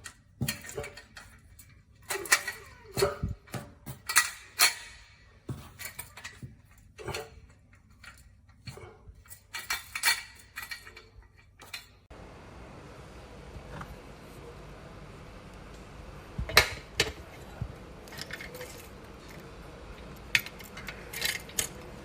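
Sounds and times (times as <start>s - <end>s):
hard plastic parts clacking: 0.0s - 12.0s.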